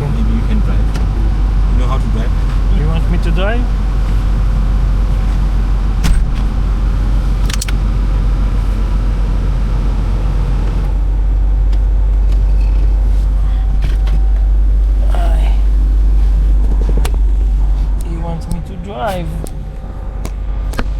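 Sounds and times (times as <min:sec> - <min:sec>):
vehicle engine low rumble: 0:00.0 - 0:20.9.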